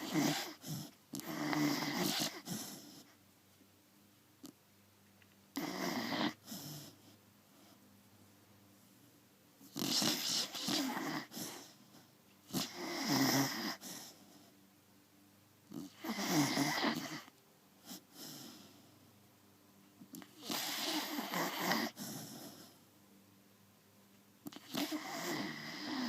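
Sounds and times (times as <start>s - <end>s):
dog snoring: 0.0s - 3.2s, 5.5s - 7.8s, 9.6s - 14.5s, 15.7s - 19.0s, 20.1s - 22.8s, 24.4s - 26.0s.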